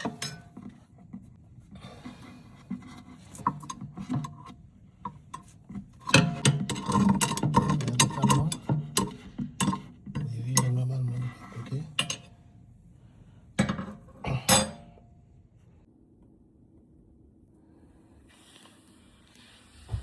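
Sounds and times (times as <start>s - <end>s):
tools scraping and knocking: 0.0s - 1.3s, 2.0s - 12.4s, 13.6s - 15.0s.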